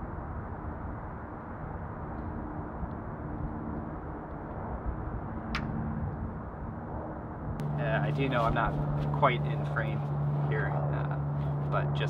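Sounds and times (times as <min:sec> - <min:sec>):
distant engine hum: 0:00.0 - 0:12.0
light wind rumble: 0:00.0 - 0:12.0
sharp click: 0:05.5 - 0:05.7.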